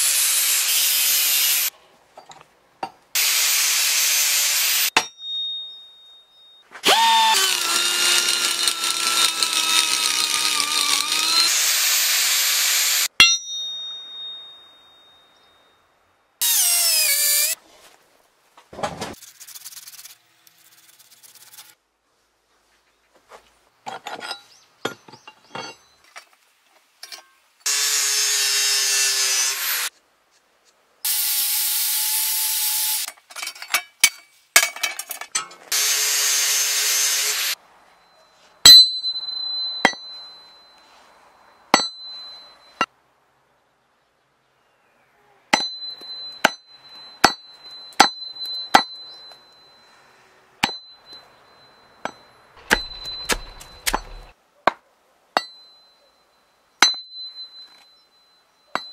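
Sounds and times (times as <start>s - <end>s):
high ringing tone: 4.9s - 6.8s, 13.1s - 16.0s, 37.8s - 42.9s, 45.6s - 54.4s, 55.4s - 58.9s
hatchet scraping wood: 6.8s - 12.6s, 52.0s - 54.3s.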